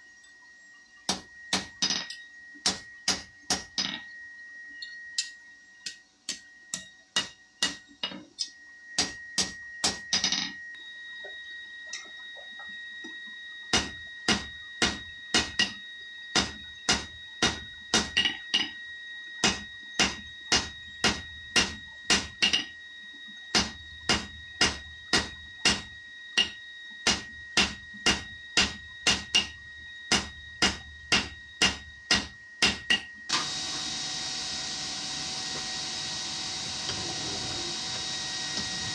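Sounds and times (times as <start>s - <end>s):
hammer striking steel on anvil: 1.1s - 3.8s, 5.2s - 7.9s, 9.0s - 10.4s, 13.7s - 15.8s, 16.4s - 18.7s, 19.4s - 22.7s, 23.6s - 33.1s.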